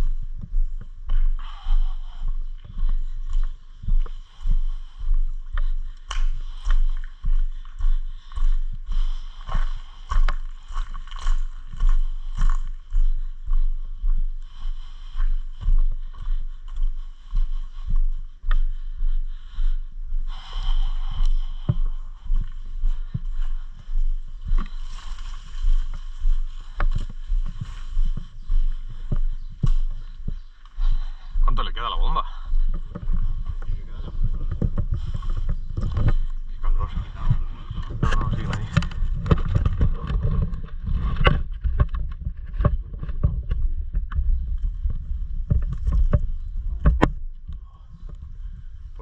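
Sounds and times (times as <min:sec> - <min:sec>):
low rumbling: 0:00.0 - 0:49.0
wind on microphone: 0:32.9 - 0:49.0.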